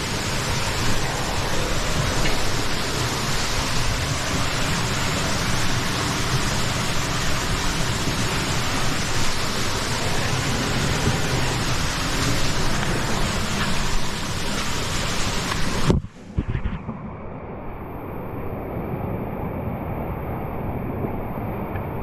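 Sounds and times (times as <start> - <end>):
stream water rushing over rocks: 0.0 - 16.2.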